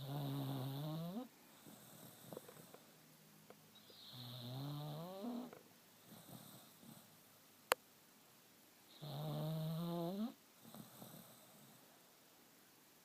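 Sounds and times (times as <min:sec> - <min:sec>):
dog snoring: 0:00.0 - 0:02.8, 0:03.8 - 0:07.2, 0:08.9 - 0:11.8.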